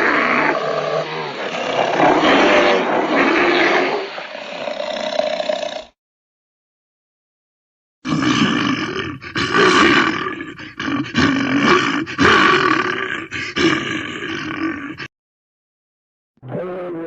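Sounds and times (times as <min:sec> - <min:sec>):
bear roaring and growling: 0:00.0 - 0:05.9, 0:08.1 - 0:15.1, 0:16.4 - 0:17.0.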